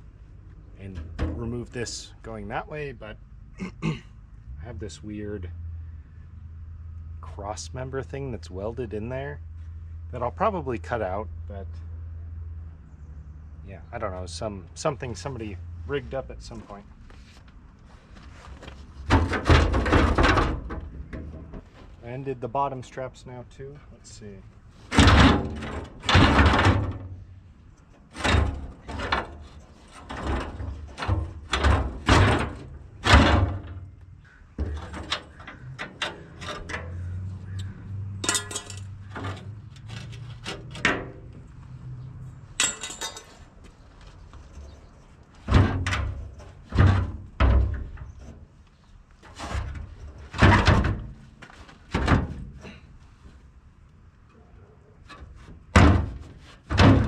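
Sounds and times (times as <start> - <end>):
metal fuel tank clunking: 19.1 - 21.7, 24.9 - 27.2, 28.0 - 41.4, 45.4 - 48.4, 55.1 - 57.0.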